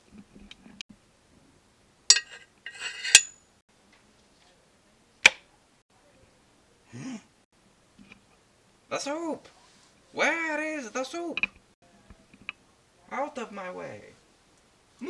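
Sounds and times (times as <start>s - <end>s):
utensils and dishes clattering: 2.1s - 3.4s.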